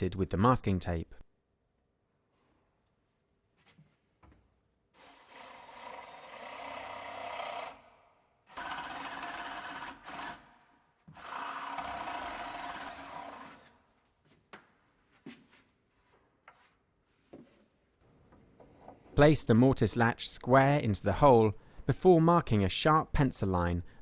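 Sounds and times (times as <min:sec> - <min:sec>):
power drill boring into wood: 0:05.0 - 0:07.8, 0:08.5 - 0:10.4, 0:11.1 - 0:13.7.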